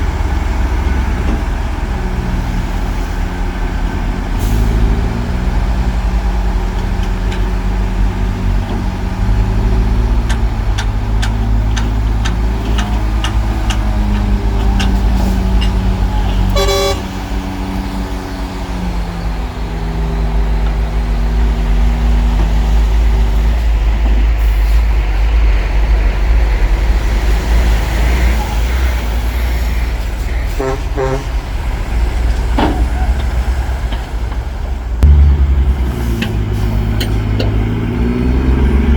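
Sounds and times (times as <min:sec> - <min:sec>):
heavy diesel machinery running: 0:00.0 - 0:38.9
knocks and clanks: 0:06.7 - 0:16.5, 0:32.3 - 0:38.2
short horn toot: 0:16.4 - 0:17.1.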